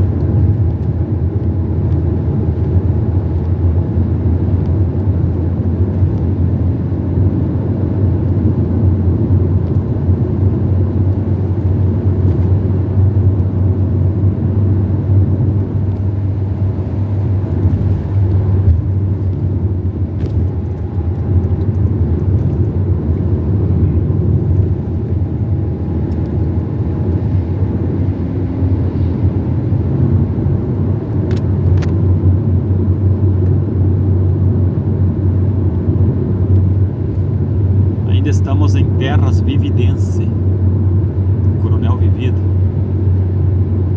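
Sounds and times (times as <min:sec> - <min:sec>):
car engine and tyre rumble: 0:00.0 - 0:43.9.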